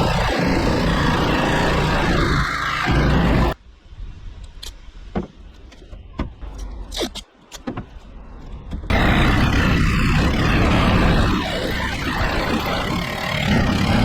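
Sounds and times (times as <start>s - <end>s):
power saw cutting sheet metal: 8.9s - 14.0s.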